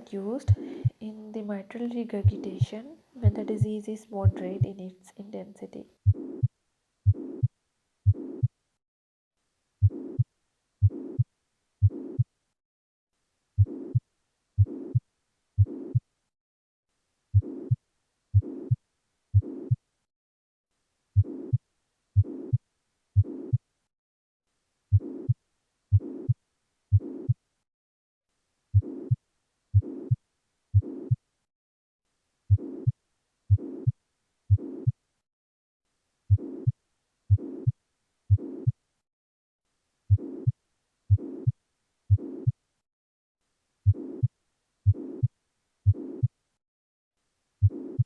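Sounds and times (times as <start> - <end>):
heartbeat through stethoscope: 0.4 - 1.0, 2.2 - 4.8, 6.0 - 8.6, 9.8 - 12.3, 13.6 - 16.1, 17.3 - 19.8, 21.2 - 21.6, 22.2 - 22.6, 23.2 - 23.6, 24.9 - 27.4, 28.7 - 31.2, 32.5 - 35.0, 36.3 - 38.8, 40.1 - 42.6, 43.8 - 46.4, 47.6 - 48.0
blowing heart murmur whoosh: 2.2 - 4.7, 6.0 - 6.5, 7.1 - 7.5, 8.1 - 8.5, 9.8 - 11.2, 13.6 - 14.0.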